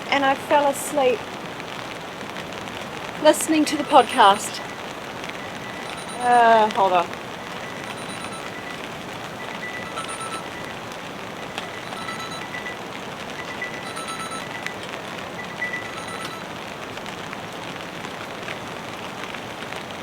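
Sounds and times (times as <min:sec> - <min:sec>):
rain falling: 0:00.0 - 0:20.0
phone high warning beeps: 0:03.2 - 0:16.7.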